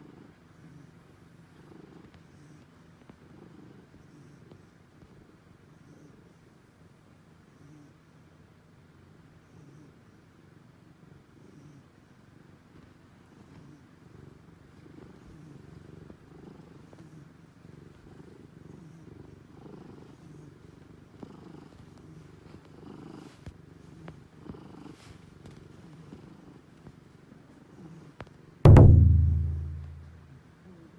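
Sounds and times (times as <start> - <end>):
loud low ringing hit: 28.7 - 30.2.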